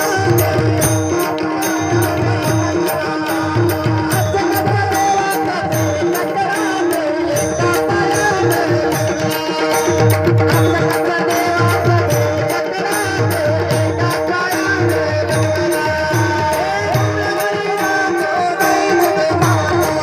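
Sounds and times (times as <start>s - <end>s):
held steady notes: 0.0s - 20.0s
tabla playing rhythm: 0.0s - 20.0s.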